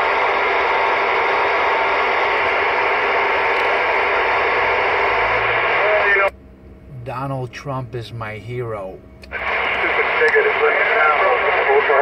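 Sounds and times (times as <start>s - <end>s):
radio static hiss: 0.0s - 6.3s, 9.3s - 12.0s.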